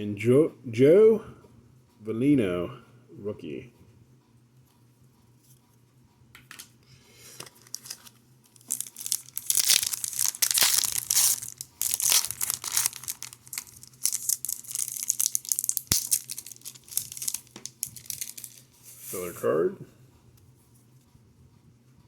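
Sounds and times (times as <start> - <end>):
foil wrapper tearing and crinkling: 7.5 - 18.7.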